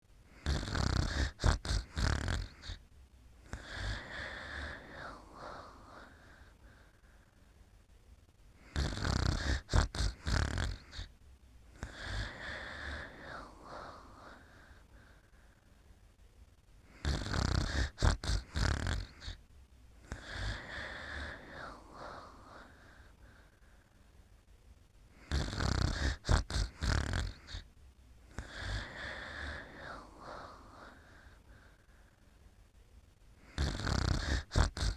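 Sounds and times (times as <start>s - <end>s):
person snoring: 0.3s - 2.8s, 3.4s - 7.0s, 8.6s - 11.1s, 11.7s - 15.3s, 16.8s - 19.4s, 20.0s - 23.6s, 25.1s - 27.7s, 28.3s - 31.8s, 33.4s - 34.9s
soft breath: 3.4s - 7.9s, 11.7s - 16.0s, 20.0s - 24.4s, 25.1s - 32.6s.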